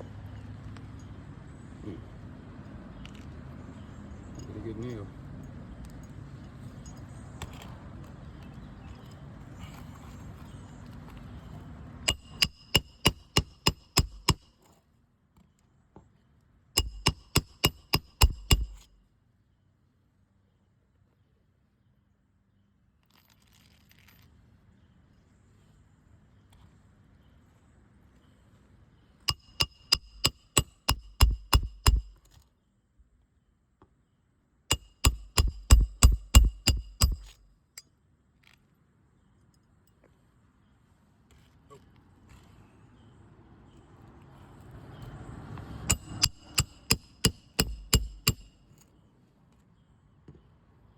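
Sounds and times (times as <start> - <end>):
hammer blows on metal: 12.1 - 14.5, 16.8 - 18.9, 29.3 - 32.2, 34.7 - 37.4, 45.9 - 48.6.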